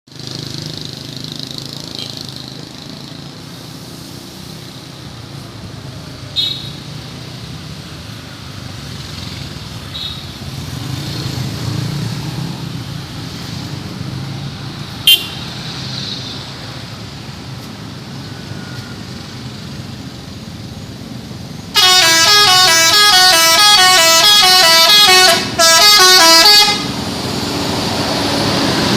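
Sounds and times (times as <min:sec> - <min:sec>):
street noise: 0:00.1 - 0:28.9
musical multi-tone bus horn: 0:15.0 - 0:15.5, 0:21.7 - 0:27.1
bus engine running: 0:16.6 - 0:28.9.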